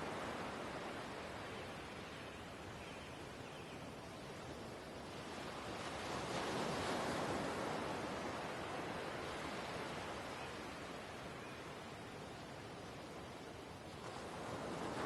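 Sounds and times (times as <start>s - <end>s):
ocean waves washing in: 4.3s - 15.0s.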